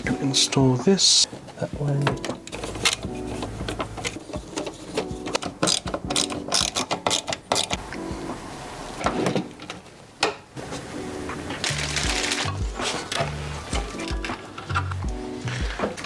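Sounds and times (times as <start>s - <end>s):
metal parts knocking: 1.3s - 7.9s
ratchet screwdriver clicking: 5.3s - 7.8s.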